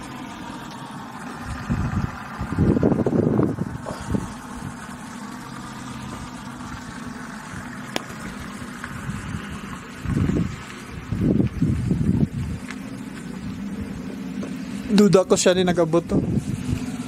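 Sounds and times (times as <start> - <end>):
car engine and road noise: 0.0 - 17.0.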